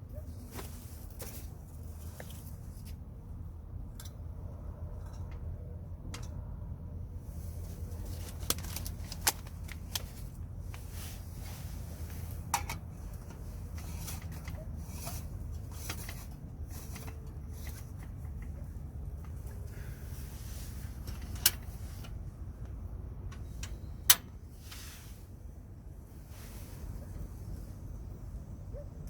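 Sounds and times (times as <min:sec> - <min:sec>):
rustling of handled objects: 0:00.1 - 0:03.1, 0:07.2 - 0:23.9.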